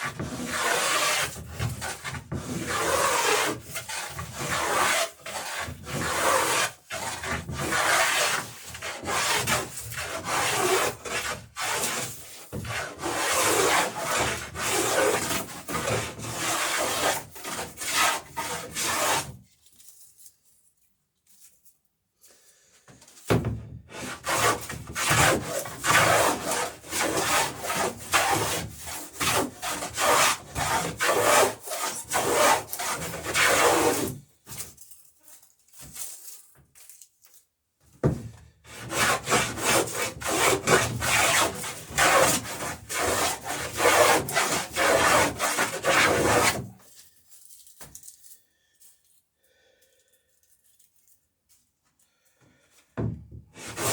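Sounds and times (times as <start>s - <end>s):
hand plane shaving wood: 0.0s - 19.4s, 23.9s - 34.3s, 38.7s - 46.8s, 53.6s - 53.9s.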